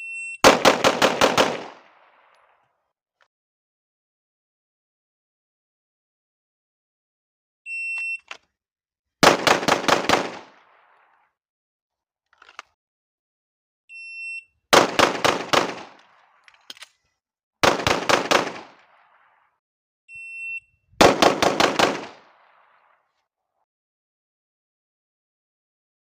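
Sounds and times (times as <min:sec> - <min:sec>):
rapid pistol shots: 0:00.4 - 0:02.2, 0:09.2 - 0:10.9, 0:14.8 - 0:16.0, 0:17.6 - 0:19.0, 0:21.0 - 0:22.8.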